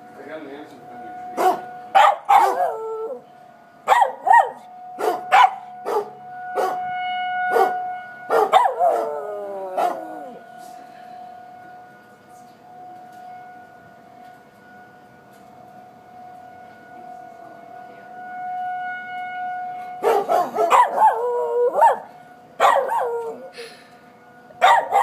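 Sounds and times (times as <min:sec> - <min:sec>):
warning siren steady tone: 0:00.0 - 0:25.0
dog howling: 0:01.4 - 0:03.2, 0:08.3 - 0:10.4, 0:20.0 - 0:23.5, 0:24.6 - 0:25.0.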